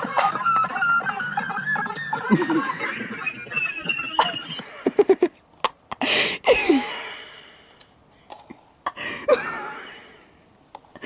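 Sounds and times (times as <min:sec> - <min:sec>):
person wheezing laughter: 0:00.0 - 0:07.2, 0:08.9 - 0:10.4.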